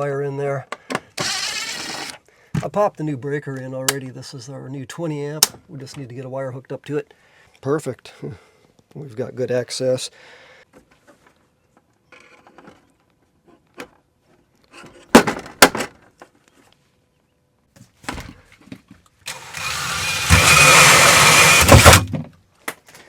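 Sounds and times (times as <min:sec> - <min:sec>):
small power tool motor whine: 0:01.2 - 0:02.2, 0:19.3 - 0:22.0.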